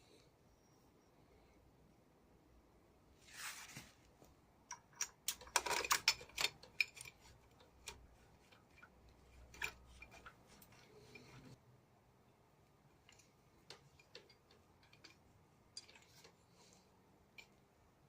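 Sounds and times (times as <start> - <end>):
metal tools clicking and clinking: 4.7 - 11.6, 13.0 - 17.6.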